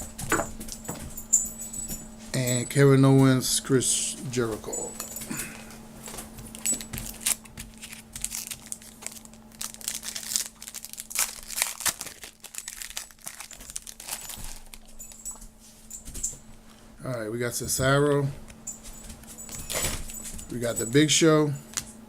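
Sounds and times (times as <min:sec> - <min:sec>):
wrapper crinkling and tearing: 0:06.5 - 0:15.1.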